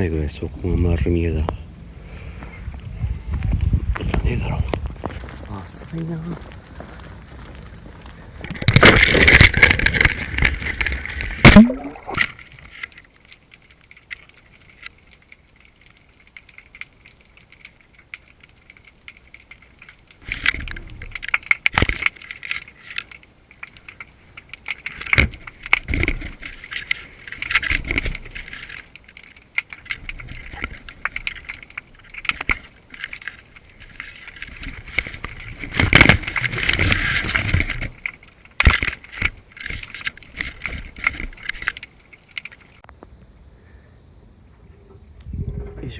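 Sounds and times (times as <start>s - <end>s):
rattling clinking handling noise: 2.4s - 11.4s.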